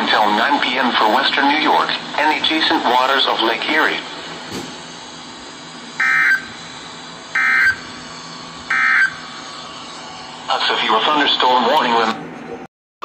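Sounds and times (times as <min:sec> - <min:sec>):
digital data tone bursts: 0:06.0 - 0:06.6, 0:07.3 - 0:08.0, 0:08.7 - 0:09.3.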